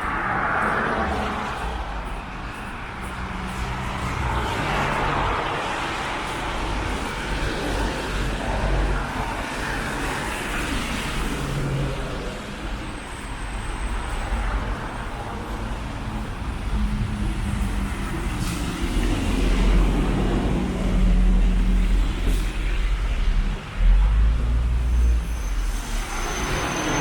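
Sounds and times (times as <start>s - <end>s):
vehicles passing on street: 0.0s - 27.0s.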